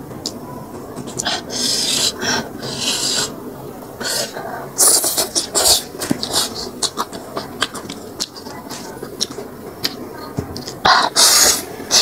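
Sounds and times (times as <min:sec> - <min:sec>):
slurps and crunches: 0:04.0 - 0:10.0
person chewing and smacking: 0:04.3 - 0:11.7.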